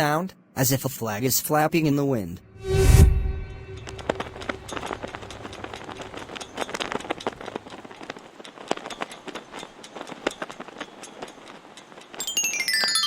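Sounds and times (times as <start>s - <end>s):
flapping snaps and crackles: 4.7s - 12.2s.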